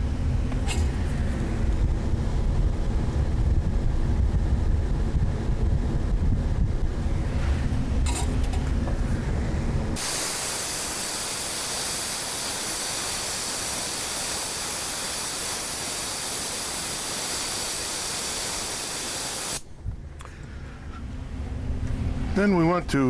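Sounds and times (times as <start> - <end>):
low rumble: 0.0 - 10.0
compressed air hissing: 10.0 - 19.7.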